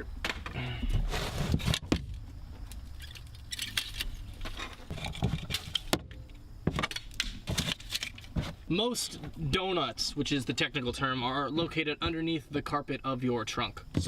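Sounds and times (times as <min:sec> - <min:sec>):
objects handled and set down: 0:00.2 - 0:09.4.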